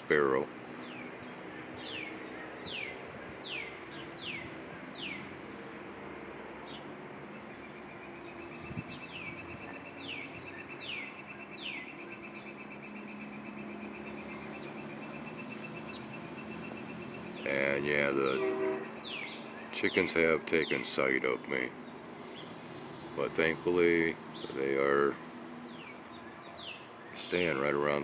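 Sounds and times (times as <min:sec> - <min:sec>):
bird rapid trill: 0:07.5 - 0:21.0.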